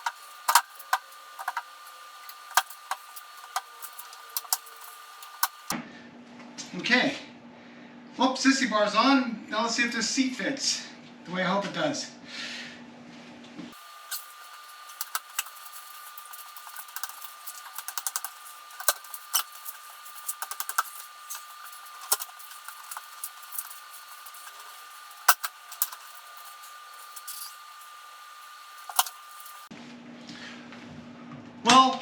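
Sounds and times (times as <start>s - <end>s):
steady high-pitched hum: 0.0s - 5.8s, 13.8s - 29.7s.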